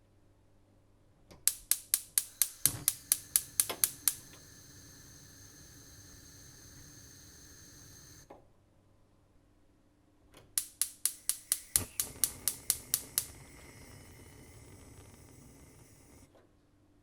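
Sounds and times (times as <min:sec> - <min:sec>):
spark igniter clicking: 0:01.5 - 0:08.2, 0:10.6 - 0:16.3
burner shutting off click: 0:01.5 - 0:08.3, 0:10.6 - 0:16.3
gas burner hissing: 0:01.5 - 0:08.3, 0:10.6 - 0:16.4.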